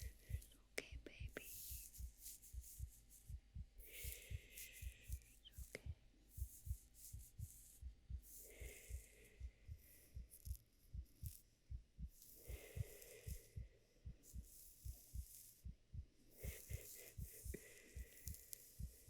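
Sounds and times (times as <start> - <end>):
faint breathy sound: 0.0 - 19.0
heartbeat thumps: 0.0 - 19.0.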